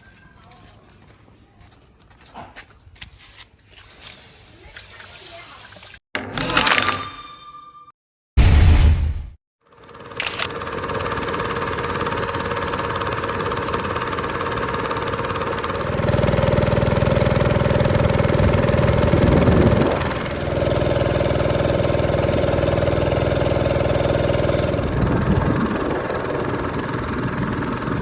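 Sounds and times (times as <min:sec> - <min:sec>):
engine running: 0:09.7 - 0:28.0.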